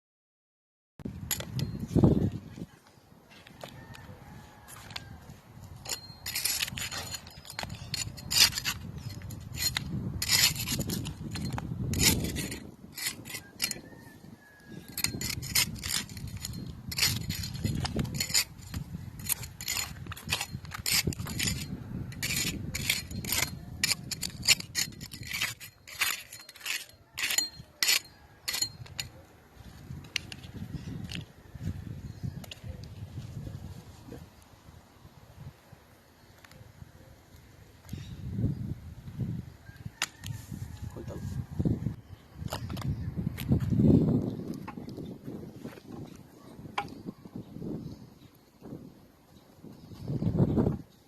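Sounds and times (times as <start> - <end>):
hand tool scraping hard surface: 5.8 - 13.9, 14.9 - 29.2.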